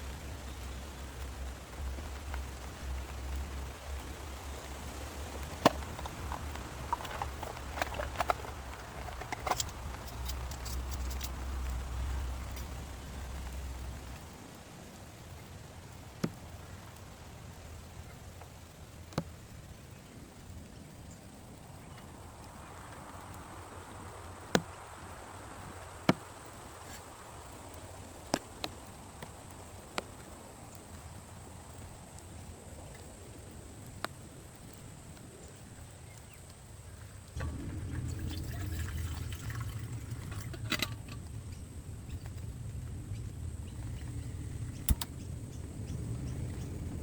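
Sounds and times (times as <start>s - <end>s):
light rain hiss: 0.0s - 47.0s
low rumble: 37.4s - 47.0s.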